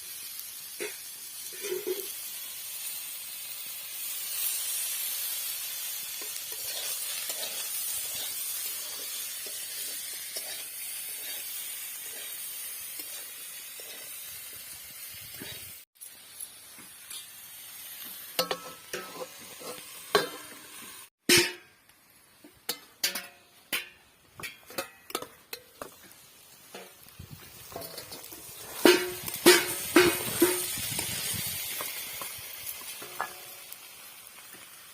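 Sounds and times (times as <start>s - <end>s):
curry sizzling in a pan: 0.0s - 34.9s
utensil scraping a pan: 0.8s - 2.2s, 6.1s - 14.7s, 18.4s - 20.7s, 27.6s - 31.9s.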